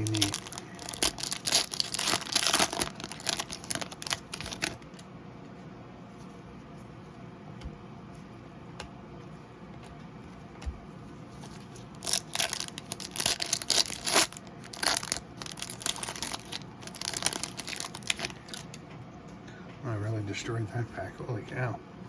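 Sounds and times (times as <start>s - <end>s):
foil wrapper tearing and crinkling: 0.0s - 5.0s, 11.5s - 18.8s.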